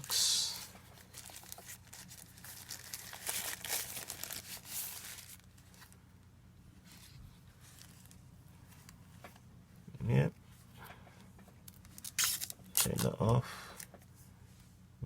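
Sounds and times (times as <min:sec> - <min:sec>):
packaging crinkling and rustling: 0:00.9 - 0:06.0, 0:06.8 - 0:08.2, 0:11.7 - 0:13.1.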